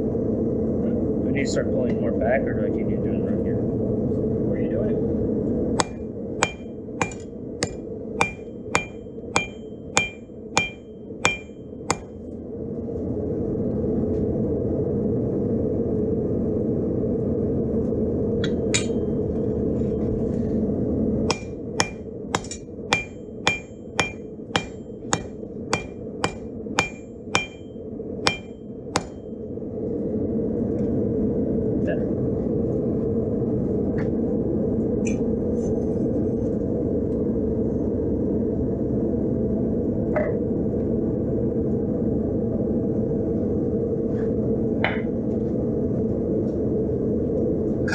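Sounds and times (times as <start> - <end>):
hammer striking steel on anvil: 5.8 - 12.1, 18.8 - 19.1, 21.3 - 29.3.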